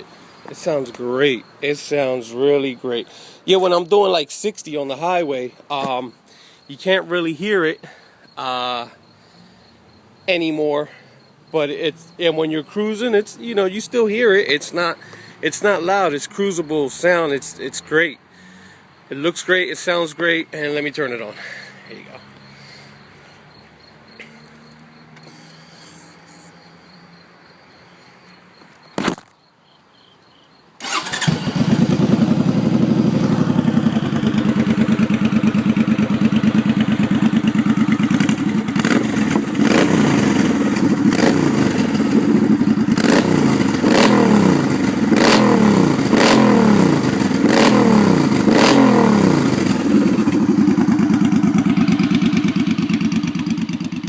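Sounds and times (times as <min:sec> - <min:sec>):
motorcycle engine starting and idling: 0:30.8 - 0:54.0.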